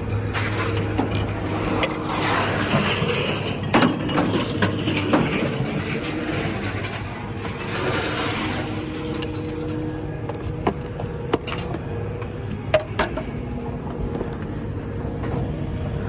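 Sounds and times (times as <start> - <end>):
scrap metal clanking: 0.0 - 11.8
engine hum: 0.0 - 16.0.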